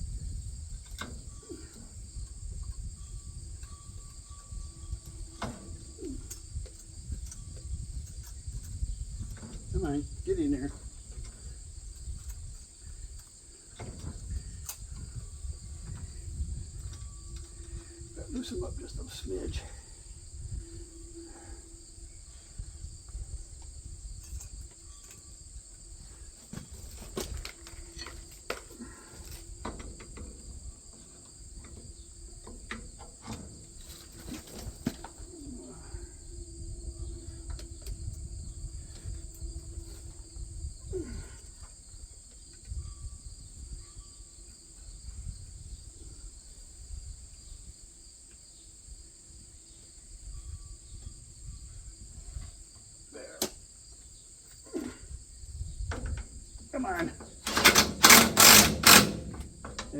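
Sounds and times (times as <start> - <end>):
insects trilling: 0.0 - 59.9
clicks and knocks on metal parts: 57.3 - 59.9.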